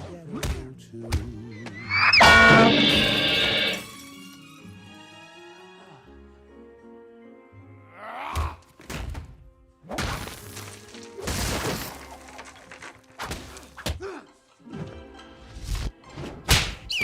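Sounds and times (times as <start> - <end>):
background music: 0.2 - 17.0
shattering crashes: 1.9 - 4.3
thuds and whacks: 9.9 - 10.4, 13.2 - 14.0, 16.4 - 16.9.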